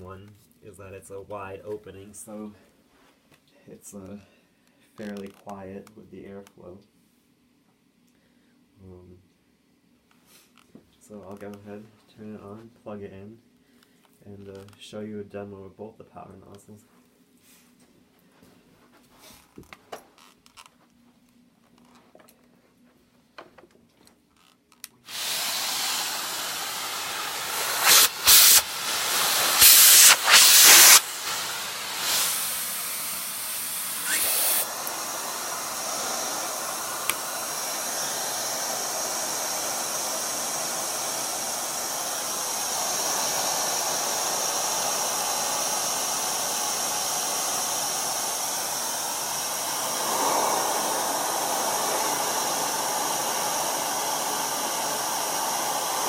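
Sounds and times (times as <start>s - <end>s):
vacuum air rushing through hose: 25.1s - 56.0s.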